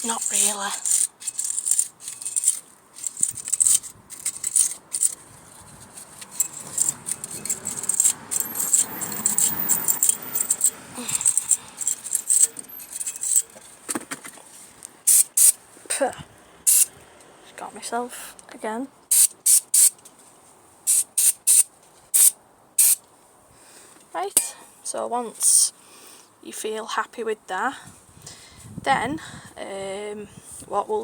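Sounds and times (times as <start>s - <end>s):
stiff brush scrubbing metal: 0.0s - 13.6s
light metallic rattling: 0.0s - 14.4s.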